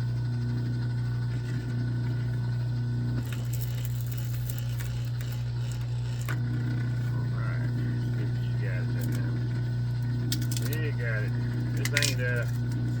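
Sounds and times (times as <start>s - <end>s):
steady low hum: 0.0s - 13.0s
wire stripper clicking and scraping: 3.2s - 6.5s, 10.0s - 13.0s.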